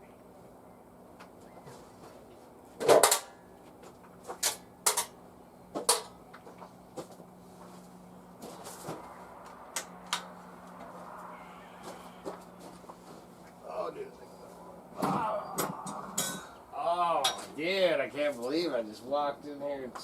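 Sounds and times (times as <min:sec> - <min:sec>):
metal junk clanking: 0:15.0 - 0:16.6.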